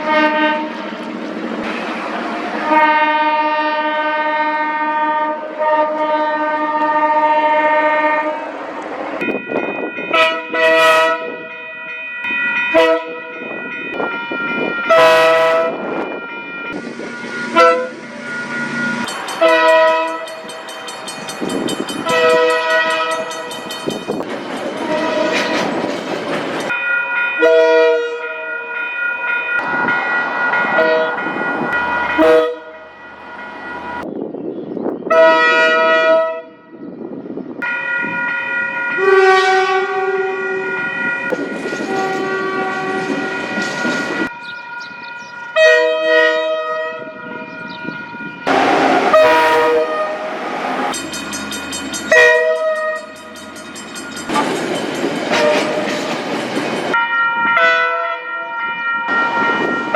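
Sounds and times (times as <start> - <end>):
locomotive horn blasts: 0.0 - 0.9, 2.6 - 8.5, 10.1 - 11.5, 12.7 - 13.4, 14.8 - 16.0, 17.4 - 18.3, 19.4 - 20.6, 22.0 - 23.7, 24.8 - 25.8, 27.4 - 28.8, 30.8 - 31.2, 32.0 - 32.9, 35.1 - 36.6, 39.0 - 41.0, 41.8 - 43.6, 45.6 - 47.4, 48.4 - 51.0, 52.0 - 53.2, 55.3 - 56.0, 57.0 - 59.9
passing train rumble: 0.0 - 59.9.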